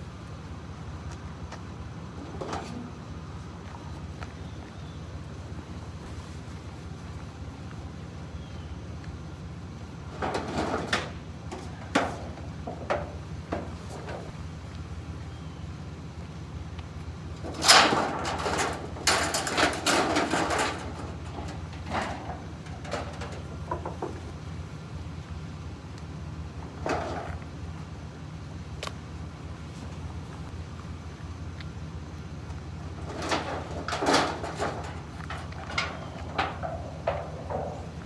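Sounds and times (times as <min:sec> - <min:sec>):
vehicle engine running: 0:00.0 - 0:38.0
clattering and knocking: 0:10.1 - 0:14.4, 0:17.4 - 0:24.8, 0:26.7 - 0:27.4, 0:32.9 - 0:38.0.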